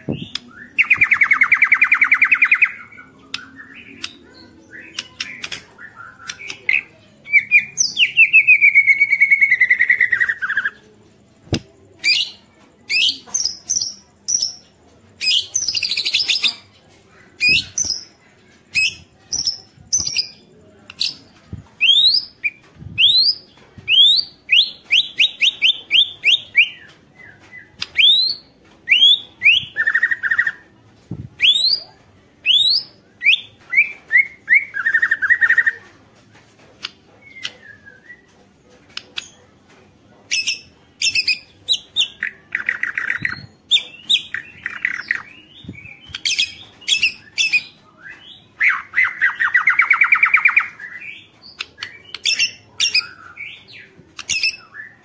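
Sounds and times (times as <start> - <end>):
bird singing whistled notes: 31.4 - 31.8.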